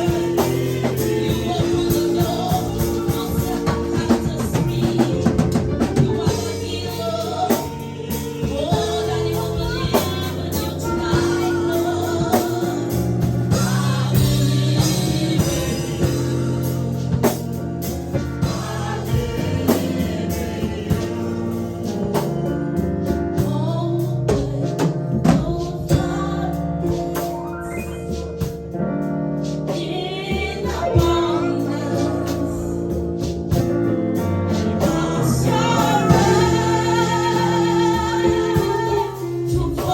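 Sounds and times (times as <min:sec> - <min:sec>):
gospel worship music: 0:00.0 - 0:39.9
steady drum beat: 0:00.0 - 0:39.9
voices singing: 0:18.4 - 0:21.5, 0:34.6 - 0:39.9.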